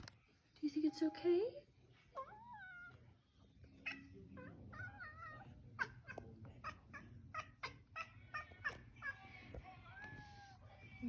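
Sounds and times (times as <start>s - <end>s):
cat chattering chirps: 3.8s - 9.2s.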